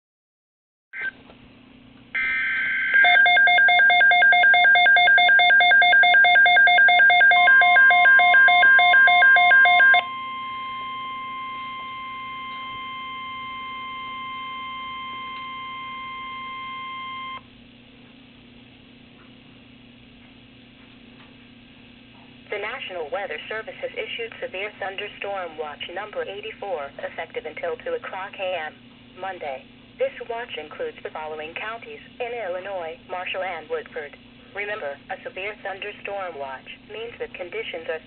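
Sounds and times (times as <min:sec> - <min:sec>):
pulsing radio alarm beeps: 0:02.2 - 0:17.4
steady warning tone: 0:02.2 - 0:17.5
low hum: 0:10.0 - 0:18.9.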